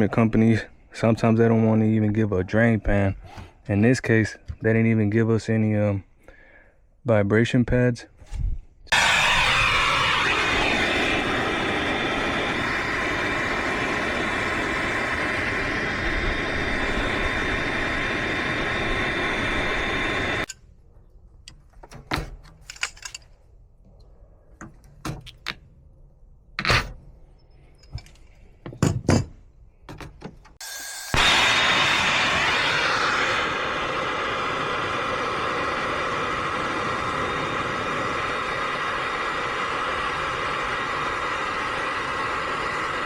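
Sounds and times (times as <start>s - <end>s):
handling knocks and clicks: 21.4s - 23.4s, 24.5s - 25.7s.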